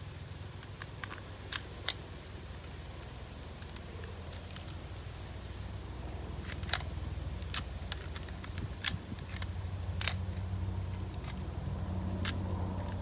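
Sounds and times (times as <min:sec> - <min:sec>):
steady low hum: 0:00.0 - 0:13.0
sharp plastic clicks: 0:00.5 - 0:02.1, 0:03.6 - 0:04.8, 0:05.9 - 0:11.5, 0:12.1 - 0:13.0.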